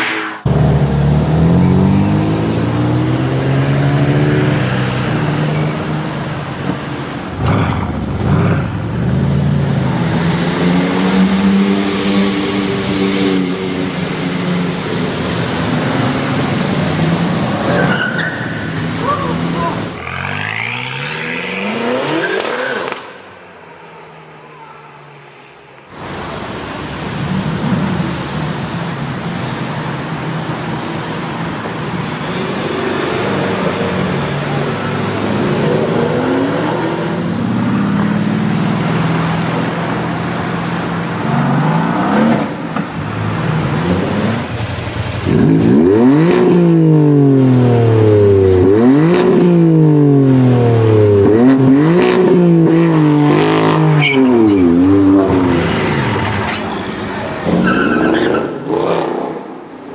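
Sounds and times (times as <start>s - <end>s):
car engine revving: 41.1s - 56.8s.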